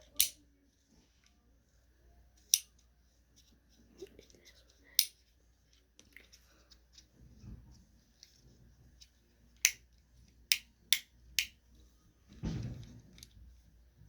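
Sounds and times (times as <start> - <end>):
soft low thump: 12.3 - 13.1.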